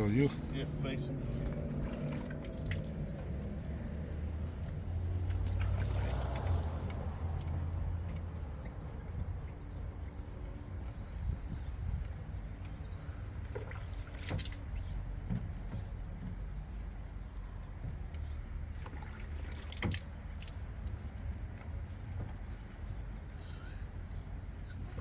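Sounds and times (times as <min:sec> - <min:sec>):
water dripping on car panel: 0:01.6 - 0:04.4, 0:05.2 - 0:10.3, 0:13.5 - 0:17.0, 0:17.8 - 0:22.5
sharp ticks: 0:06.1 - 0:08.8.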